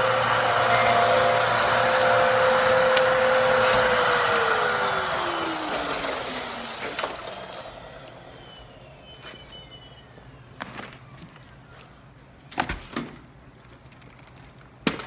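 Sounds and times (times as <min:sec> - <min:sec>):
vacuum cleaner motor spinning down: 0:00.0 - 0:10.3.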